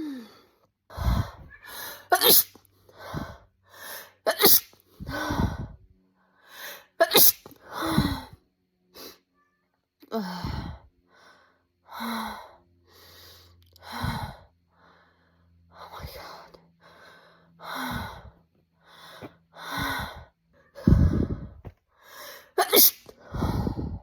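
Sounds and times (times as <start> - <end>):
woman gasping in-breath: 0.0 - 2.1, 2.9 - 4.2, 5.0 - 5.8, 7.7 - 8.4, 10.2 - 10.9, 13.8 - 14.5, 15.9 - 22.6, 23.2 - 24.0
woman sneezing: 2.1 - 2.6, 4.3 - 4.7, 7.0 - 8.1, 22.6 - 23.1.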